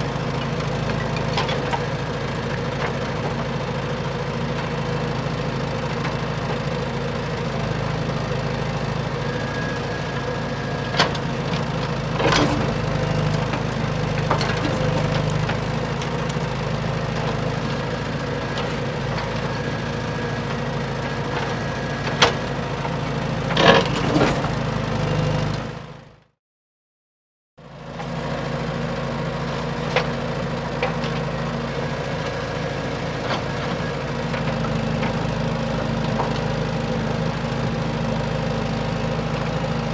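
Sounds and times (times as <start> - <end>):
sharp clicks and knocks: 14.3 - 16.6.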